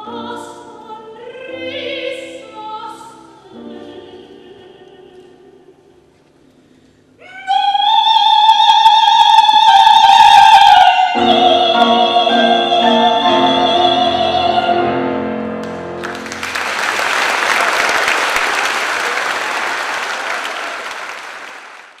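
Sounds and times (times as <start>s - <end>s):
operatic soprano singing: 0.0s - 6.0s, 7.2s - 15.4s
audience applause: 15.6s - 22.0s.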